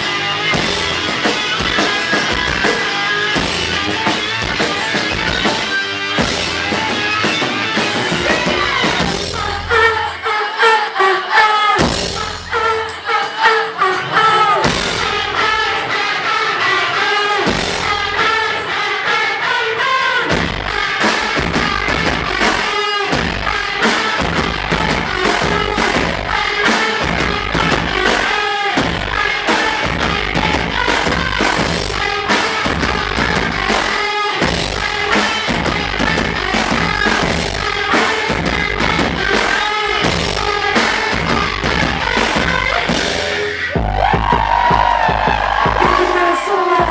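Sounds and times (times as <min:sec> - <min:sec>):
heavy drum beat: 0:00.0 - 0:09.9, 0:11.8 - 0:12.8, 0:14.6 - 0:16.1, 0:17.2 - 0:18.8, 0:20.3 - 0:46.9
distorted electric guitar: 0:00.0 - 0:10.6, 0:11.8 - 0:46.9
woman singing: 0:08.1 - 0:43.3, 0:45.7 - 0:46.9.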